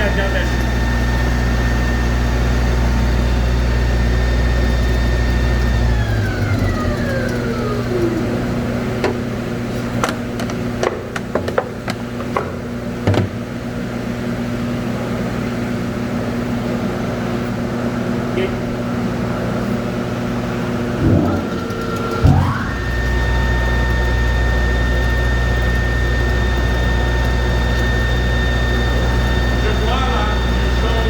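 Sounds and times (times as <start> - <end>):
meat grinder motor spinning down: 0.0 - 10.0, 20.9 - 31.0
sharp metallic knocks and clicks: 10.0 - 13.3
steady hum: 20.6 - 31.0.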